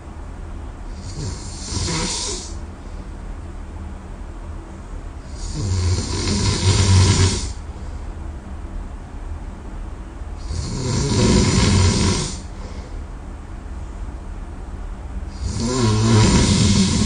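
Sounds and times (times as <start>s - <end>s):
person snoring: 1.0s - 2.6s, 5.3s - 7.6s, 10.4s - 12.6s, 15.3s - 17.0s.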